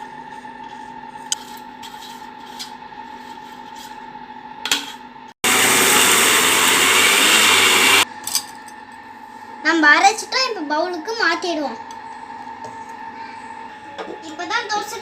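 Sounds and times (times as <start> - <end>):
electric mixer grinder running: 5.4 - 8.1.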